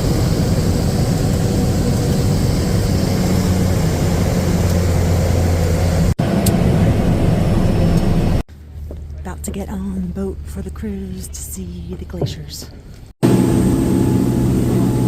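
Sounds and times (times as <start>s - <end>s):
propeller plane engine drone: 0.0s - 8.4s, 13.2s - 15.0s.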